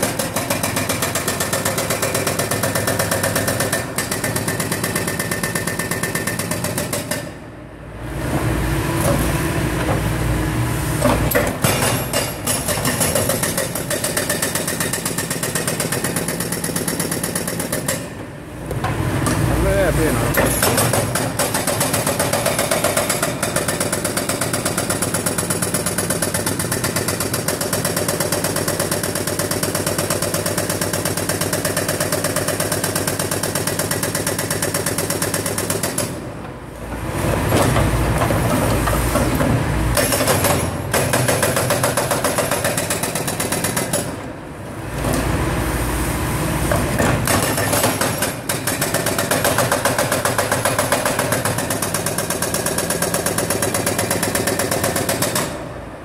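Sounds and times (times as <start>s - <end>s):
hydraulic breaker hammering: 37.5s - 44.3s, 46.7s - 55.6s.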